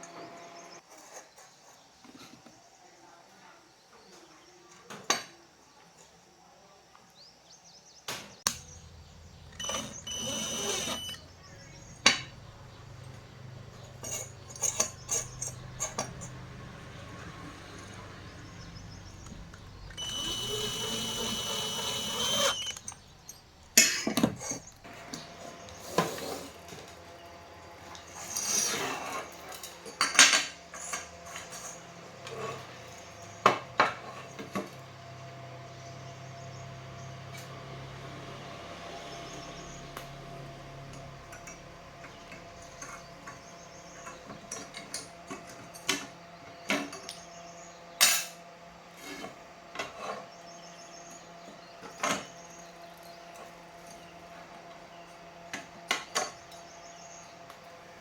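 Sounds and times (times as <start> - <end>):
small power tool whirring: 8.5 - 30.0
tools clicking and knocking: 13.8 - 16.4, 19.1 - 24.9.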